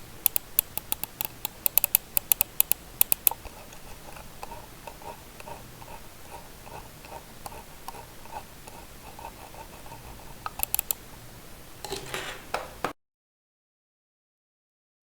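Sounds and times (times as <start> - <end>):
soft mouse ticks: 0.2 - 11.0.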